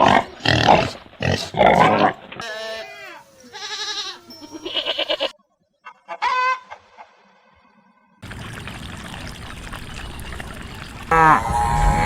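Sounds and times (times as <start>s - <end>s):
goat bleating: 2.4s - 5.3s, 11.1s - 12.0s
short animal call: 11.1s - 12.0s.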